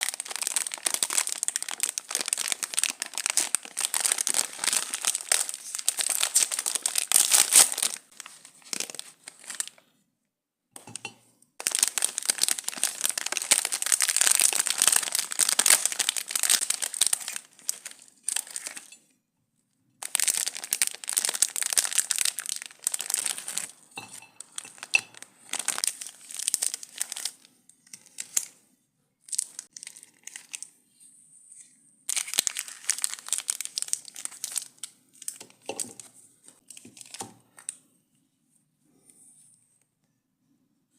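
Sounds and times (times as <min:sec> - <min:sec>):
wrappers crinkling and tearing: 0:00.0 - 0:09.8, 0:11.6 - 0:19.0, 0:20.0 - 0:28.5, 0:29.3 - 0:30.7, 0:32.1 - 0:36.1.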